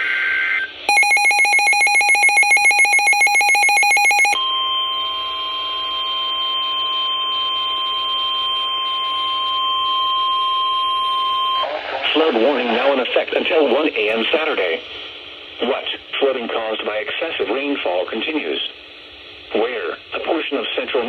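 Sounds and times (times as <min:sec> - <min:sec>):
rapid electronic beeping: 0:00.9 - 0:04.4
steady warning alarm tone: 0:00.9 - 0:05.8.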